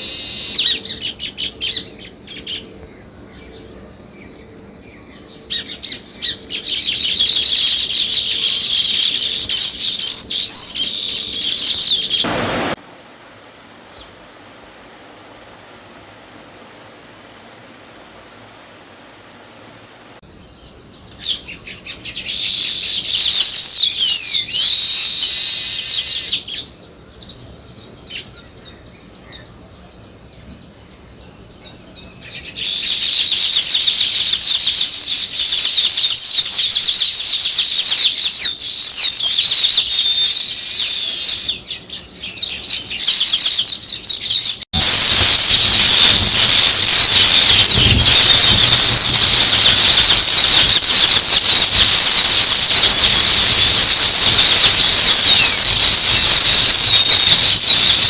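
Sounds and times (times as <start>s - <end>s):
songbirds chirping: 0.0s - 12.8s, 15.6s - 45.0s
faint hiss: 6.7s - 20.6s.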